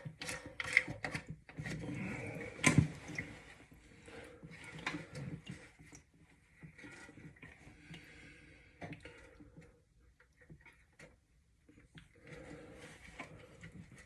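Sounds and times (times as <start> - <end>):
toilet tank parts clicking: 0.0 - 1.9.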